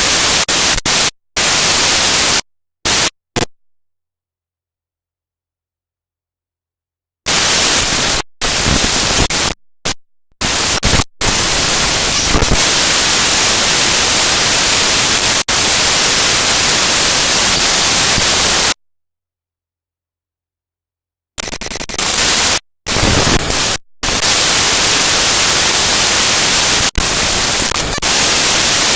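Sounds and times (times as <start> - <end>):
harsh data static: 0.0 - 3.5, 7.3 - 18.8, 21.4 - 28.9.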